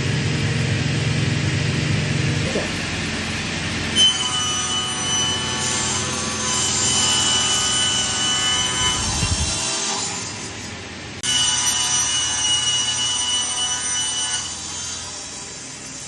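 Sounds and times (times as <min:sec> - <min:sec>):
high steady whine: 0:00.0 - 0:04.0
saw cutting wood: 0:02.3 - 0:16.0.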